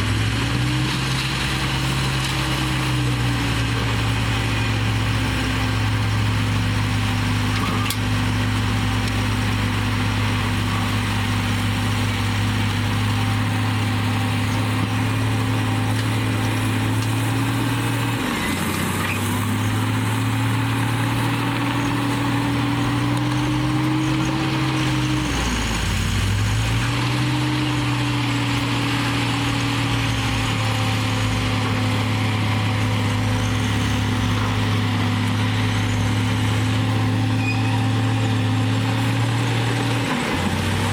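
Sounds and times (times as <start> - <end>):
bulldozer diesel engine running: 0.0 - 40.9.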